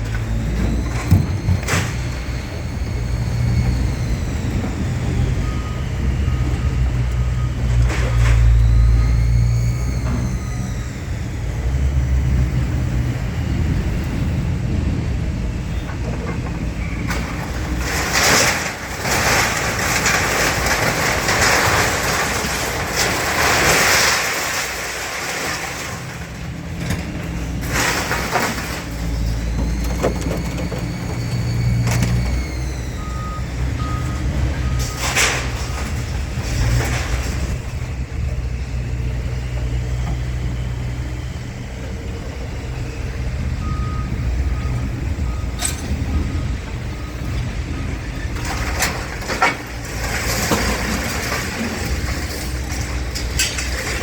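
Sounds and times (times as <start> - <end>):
diesel engine running: 0.0 - 54.0
reversing beeps: 0.1 - 12.0, 29.2 - 36.0, 43.6 - 48.4.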